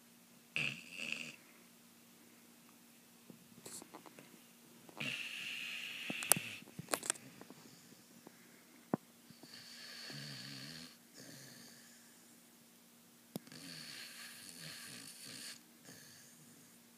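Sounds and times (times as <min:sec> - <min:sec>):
person snoring: 0:05.0 - 0:06.6, 0:09.4 - 0:11.9, 0:13.5 - 0:16.5.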